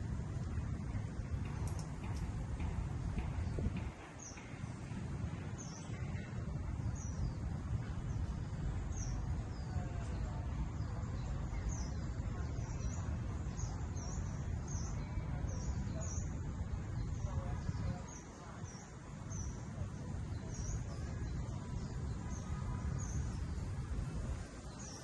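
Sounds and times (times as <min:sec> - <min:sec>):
steady low rumble: 0:00.0 - 0:25.0
small birds chirping: 0:00.4 - 0:25.0.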